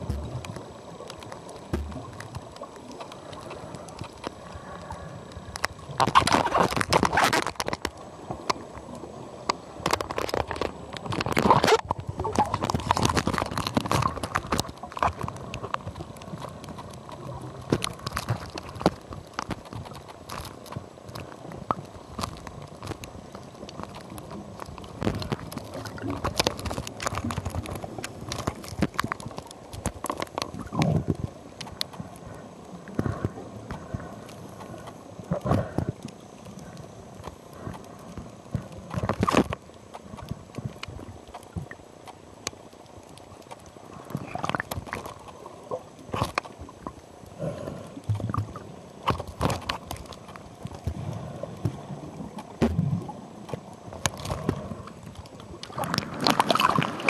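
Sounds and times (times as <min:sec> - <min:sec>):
low rumbling noise: 0:00.0 - 0:00.9.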